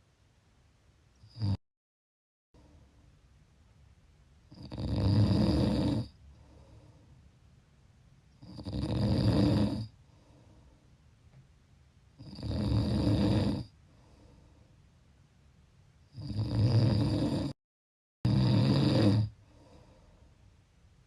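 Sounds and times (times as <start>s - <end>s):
person snoring: 1.3s - 1.6s, 4.5s - 6.2s, 8.4s - 10.0s, 12.2s - 13.7s, 16.1s - 17.6s, 18.3s - 20.0s
quiet breathing: 2.6s - 3.2s, 5.9s - 7.5s, 9.6s - 11.2s, 13.5s - 15.0s, 19.2s - 20.7s.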